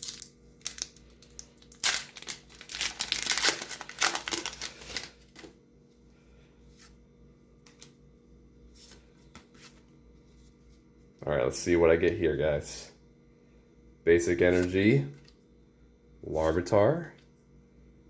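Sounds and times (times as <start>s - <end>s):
foil wrapper tearing and crinkling: 0.0s - 5.5s.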